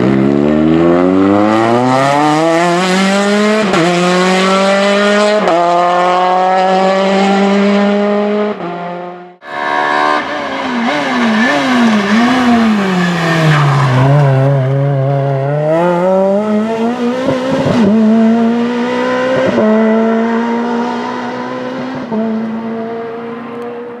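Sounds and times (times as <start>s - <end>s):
rally car engine revving: 0.0s - 24.0s.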